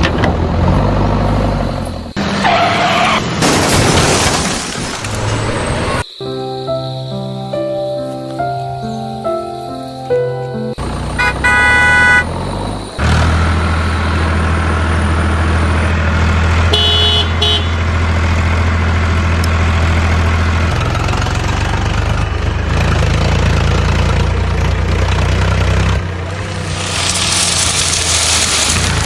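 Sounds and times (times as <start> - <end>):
heavy vehicle engine droning: 0.0 - 2.6, 9.5 - 29.0
truck horn honking: 10.8 - 12.6, 16.5 - 18.2.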